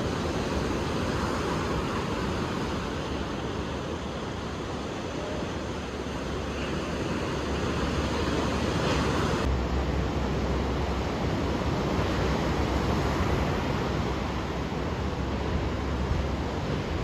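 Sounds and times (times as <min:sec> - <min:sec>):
ocean surf washing on shore: 0:00.0 - 0:17.0.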